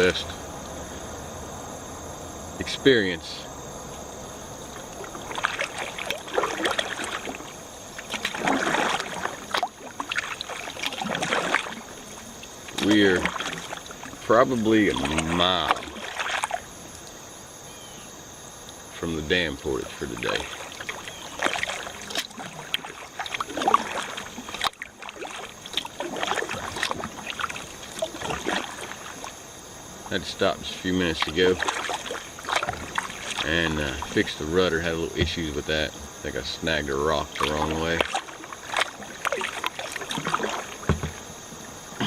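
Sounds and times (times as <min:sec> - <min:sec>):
paddle strokes splashing water: 0:02.6 - 0:42.0
sharp knocks: 0:40.8 - 0:41.2.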